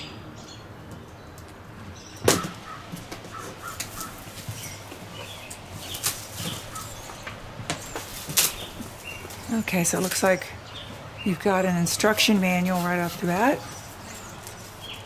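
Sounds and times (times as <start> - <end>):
faint birds calling: 0.0 - 15.0
packaging clicks and rustles: 2.2 - 10.4, 12.7 - 15.0.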